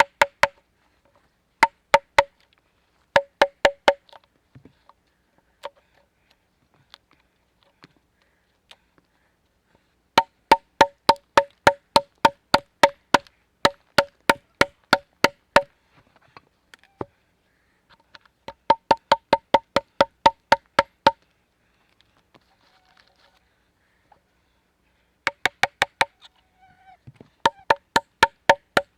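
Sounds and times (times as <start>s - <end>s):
hammer blows on wood: 0.0s - 0.6s, 1.6s - 2.3s, 3.2s - 4.0s, 10.2s - 15.7s, 18.5s - 21.2s, 25.3s - 26.1s, 27.4s - 28.9s.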